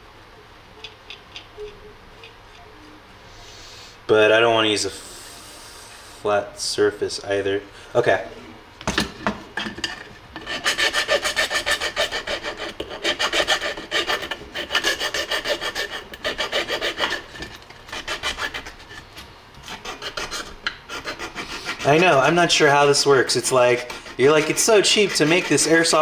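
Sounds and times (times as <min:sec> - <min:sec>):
file scraping plastic: 0:09.6 - 0:26.0.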